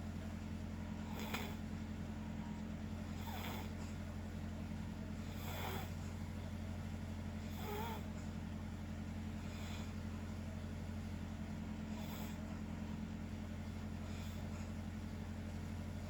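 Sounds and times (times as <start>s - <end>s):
steady low hum: 0.0s - 16.0s
people snoring: 1.1s - 1.6s, 3.1s - 3.7s, 5.3s - 5.9s, 7.5s - 8.0s.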